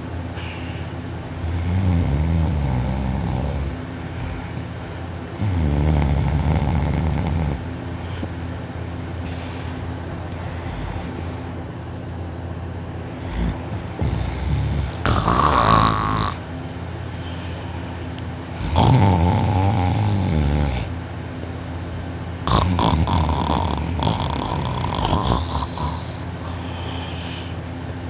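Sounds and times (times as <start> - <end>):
quiet breathing: 0.3 - 1.5, 3.2 - 5.3, 9.1 - 16.4, 17.0 - 18.6, 24.1 - 27.8
man snoring loudly: 1.4 - 7.7, 10.5 - 11.2, 13.2 - 16.4, 18.5 - 20.9, 22.4 - 27.5.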